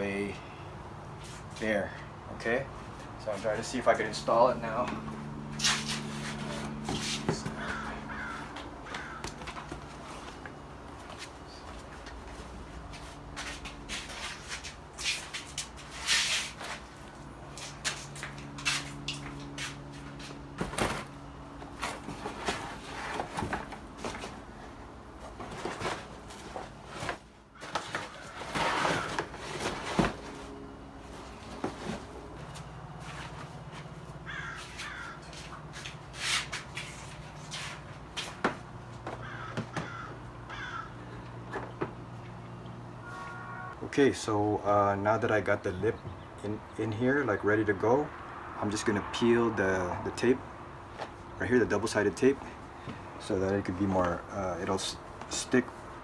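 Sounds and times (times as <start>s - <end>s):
birds cawing: 7.3s - 9.9s, 27.4s - 29.3s, 34.2s - 35.7s, 39.0s - 41.5s, 43.0s - 43.8s.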